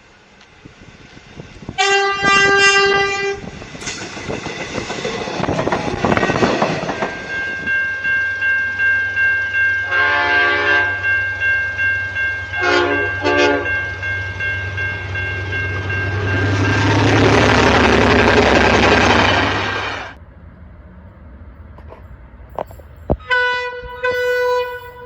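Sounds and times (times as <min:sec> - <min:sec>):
train clattering: 0:01.1 - 0:08.6, 0:12.6 - 0:20.2, 0:21.0 - 0:25.0
train horn blasts: 0:01.8 - 0:03.5, 0:09.8 - 0:11.1, 0:12.6 - 0:13.8, 0:23.2 - 0:25.0
low engine rumble: 0:15.0 - 0:25.0.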